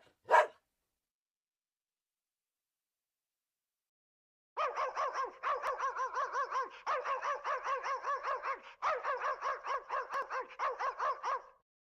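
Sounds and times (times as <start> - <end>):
dog barking rapidly: 0.0 - 0.6, 4.6 - 11.6.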